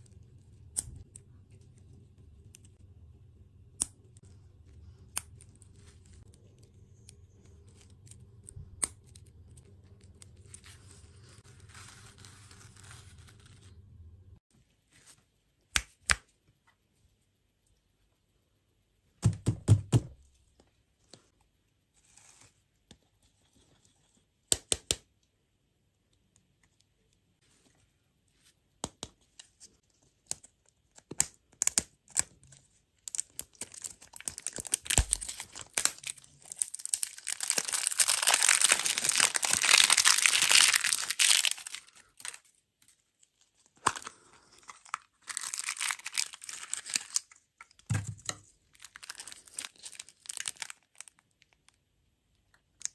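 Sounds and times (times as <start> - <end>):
plastic packaging crinkling: 33.1 - 51.8.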